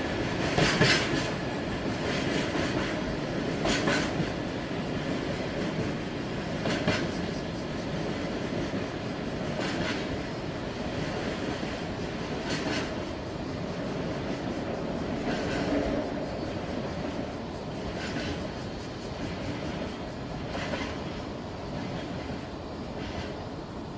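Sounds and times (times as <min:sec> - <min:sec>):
wheel clatter over rail joints: 0:00.0 - 0:04.5
train wagons rumbling: 0:00.0 - 0:23.5.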